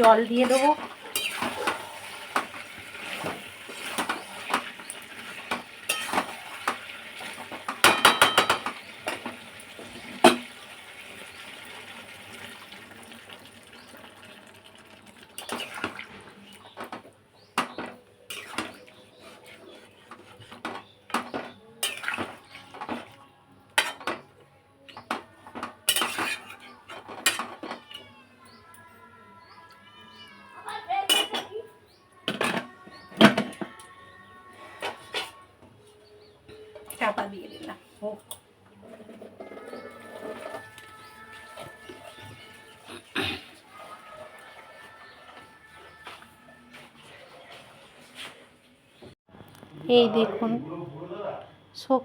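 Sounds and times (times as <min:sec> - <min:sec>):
utensils knocking against pots: 0:00.0 - 0:10.6, 0:20.0 - 0:23.1, 0:23.8 - 0:24.3, 0:24.9 - 0:28.1, 0:31.1 - 0:31.5, 0:32.3 - 0:33.8
metal spoon scraping a pan: 0:00.3 - 0:10.5, 0:17.7 - 0:23.2, 0:23.8 - 0:24.2, 0:25.5 - 0:28.2, 0:31.1 - 0:31.5, 0:38.8 - 0:42.9.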